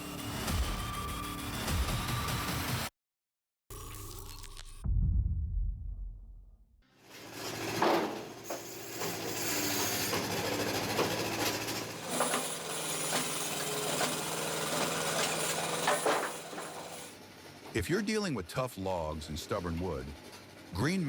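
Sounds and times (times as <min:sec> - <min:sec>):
wood-processing machine humming: 0:07.0 - 0:17.8.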